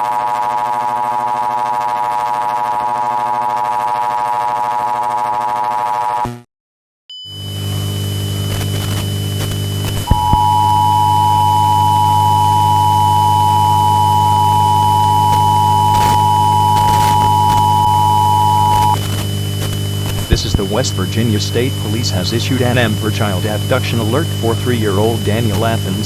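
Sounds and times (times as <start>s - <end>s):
two-tone alarm: 0.0s - 6.2s, 10.1s - 19.0s
hum with static: 0.0s - 6.4s, 7.3s - 26.0s.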